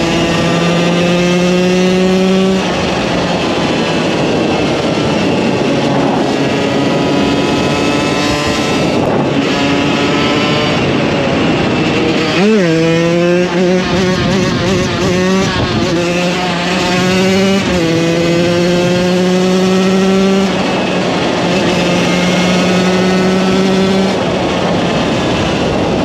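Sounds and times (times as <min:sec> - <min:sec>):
rushing noise: 0:00.0 - 0:19.0
two-stroke motorcycle engine revving: 0:00.0 - 0:26.0.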